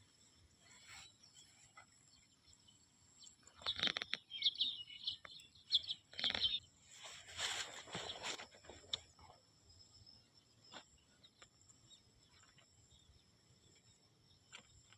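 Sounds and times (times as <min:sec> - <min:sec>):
rustling scraping noise: 0:00.6 - 0:01.9, 0:06.2 - 0:09.0
high bird chirps: 0:03.2 - 0:06.7.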